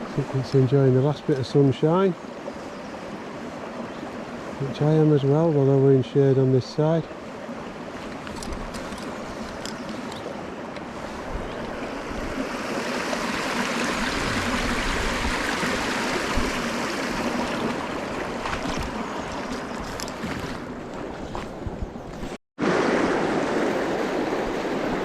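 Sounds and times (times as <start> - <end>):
river water rushing: 7.0 - 20.8, 22.6 - 25.0.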